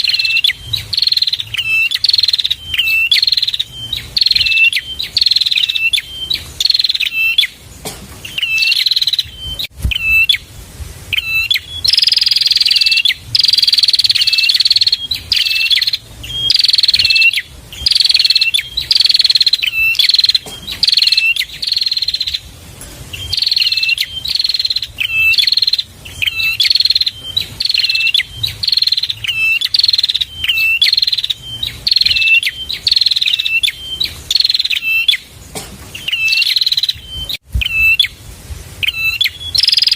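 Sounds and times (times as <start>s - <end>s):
bird chirping high notes: 0.0s - 7.6s, 8.2s - 10.5s, 11.1s - 22.5s, 23.1s - 35.4s, 36.0s - 38.2s.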